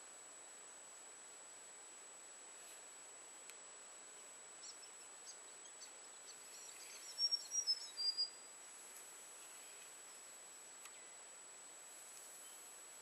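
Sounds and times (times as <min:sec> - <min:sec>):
small bird chirping: 0:04.2 - 0:08.5.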